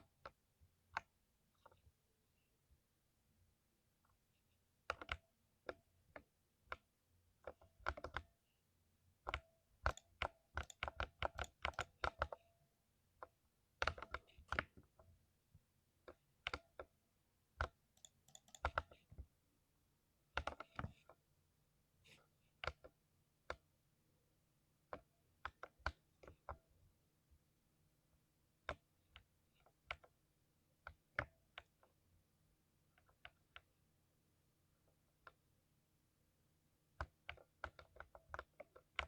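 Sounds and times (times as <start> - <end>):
mechanical keyboard typing: 9.3 - 12.4, 17.6 - 18.9.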